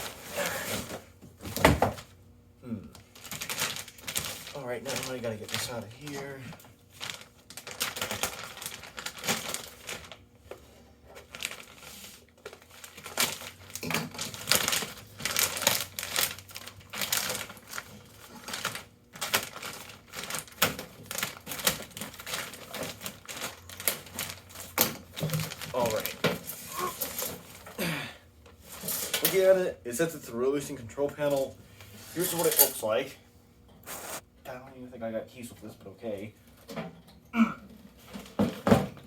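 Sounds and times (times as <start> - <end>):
packaging rustling and crinkling: 3.1 - 27.8.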